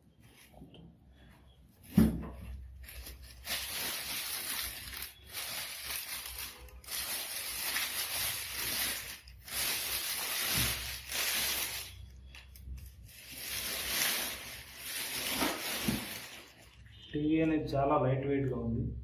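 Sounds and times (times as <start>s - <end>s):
packaging rustling and rubbing: 2.6s - 16.9s.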